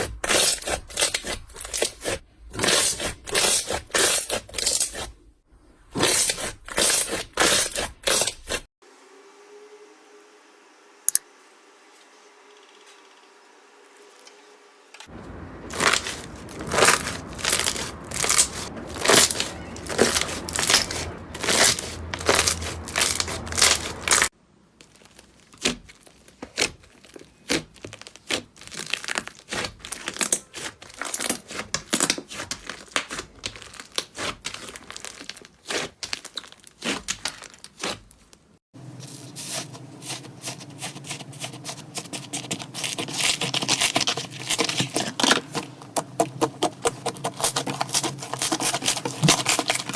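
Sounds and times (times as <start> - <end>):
slime crackling and popping: 15.7 - 38.3, 41.0 - 49.9.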